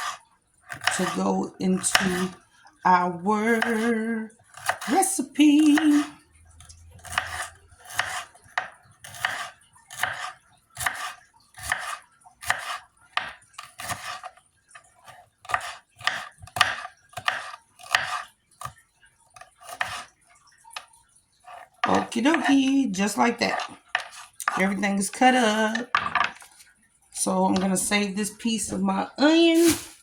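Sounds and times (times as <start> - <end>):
knife chopping pepper: 0.0 - 2.4, 3.5 - 3.9, 4.6 - 6.2, 7.0 - 14.4, 15.4 - 18.2, 19.6 - 20.1, 21.6 - 22.5, 23.5 - 24.8.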